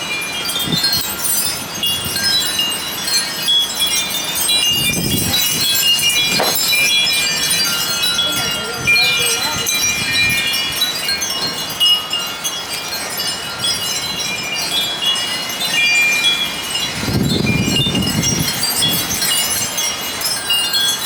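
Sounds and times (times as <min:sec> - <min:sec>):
metal wind chimes ringing: 0:00.0 - 0:21.0
gusting wind rushing: 0:04.3 - 0:11.7, 0:16.7 - 0:19.2.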